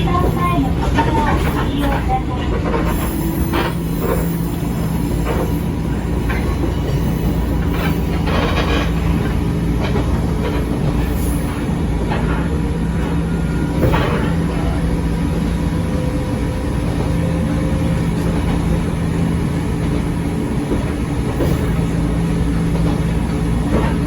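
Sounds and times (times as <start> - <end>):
railcar rumble and hum: 0.0 - 24.0
wheel clacks over rail joints: 20.7 - 24.0.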